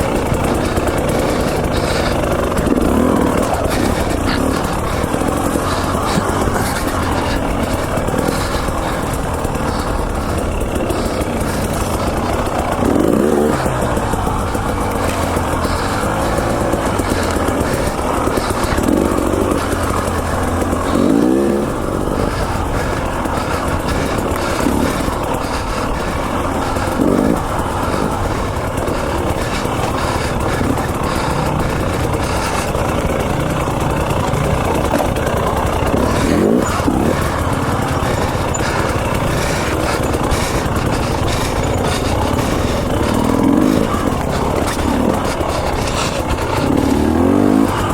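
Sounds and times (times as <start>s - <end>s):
dirt bike engine revving: 0.0s - 47.9s.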